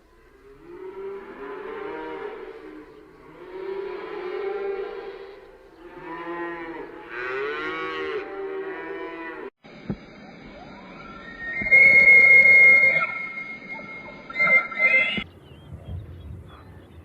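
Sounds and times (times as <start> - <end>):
cattle mooing: 0.5 - 9.5.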